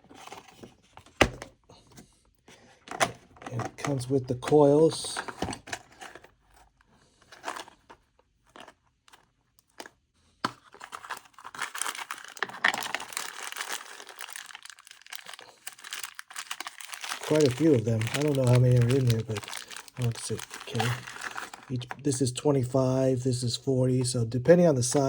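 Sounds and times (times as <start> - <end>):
plastic bag crinkling: 10.7 - 21.9.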